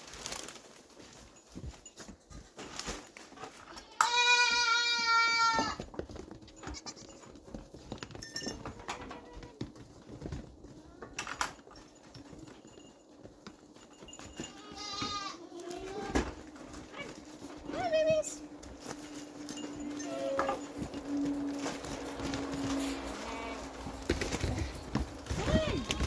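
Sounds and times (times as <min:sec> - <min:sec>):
livestock bleating: 0:03.8 - 0:05.8, 0:14.5 - 0:16.3, 0:23.1 - 0:23.8.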